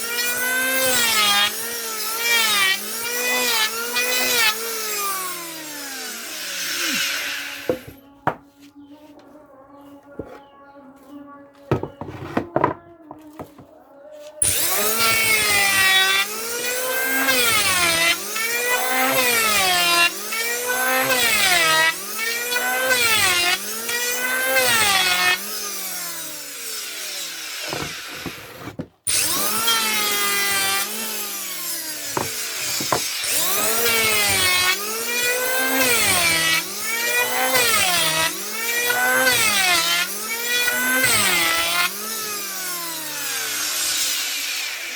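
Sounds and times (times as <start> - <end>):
electric planer cutting wood: 0.0 - 8.0, 14.4 - 44.9.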